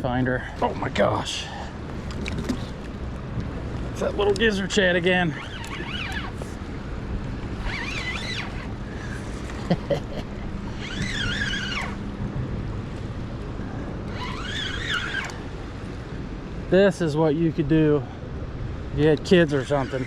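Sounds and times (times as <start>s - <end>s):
boat engine hum: 0.0s - 20.0s
high wavering whine: 4.0s - 9.6s, 10.2s - 16.8s.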